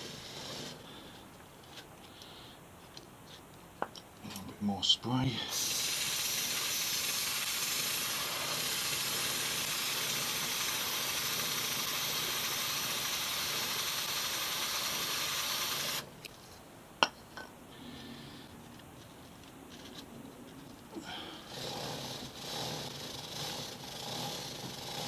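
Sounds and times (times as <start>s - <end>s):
aerosol can spraying hiss: 5.5s - 16.0s.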